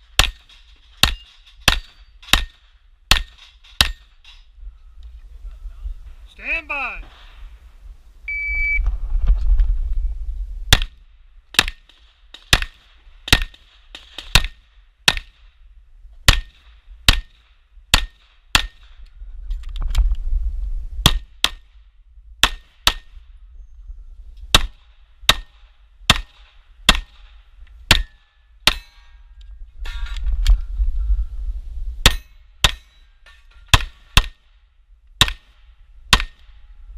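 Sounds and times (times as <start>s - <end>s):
wind rumble on microphone: 4.3s - 6.4s, 7.2s - 11.5s, 18.6s - 27.9s, 29.0s - 32.6s, 34.8s - 36.9s
shot timer beep: 8.3s - 8.8s
pistol shots: 10.7s - 15.4s.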